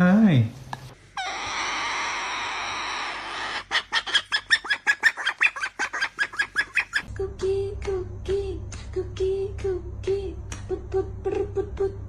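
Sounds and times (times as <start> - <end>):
bird clucking rapidly: 3.2 - 7.1.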